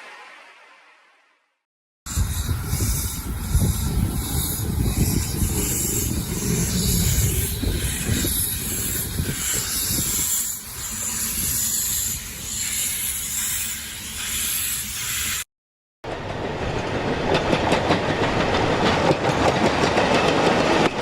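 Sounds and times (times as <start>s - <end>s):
steam hissing: 2.1s - 15.5s.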